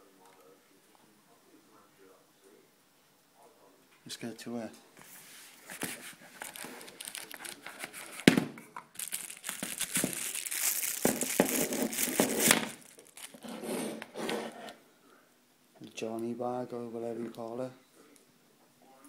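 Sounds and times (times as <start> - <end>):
plastic packaging crinkling: 5.7 - 8.3, 8.9 - 13.5.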